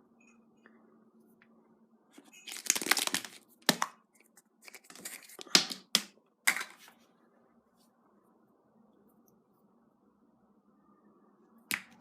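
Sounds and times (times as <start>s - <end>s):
egg cracking open: 2.3s - 3.9s
wrapper tearing and crinkling: 2.4s - 3.8s.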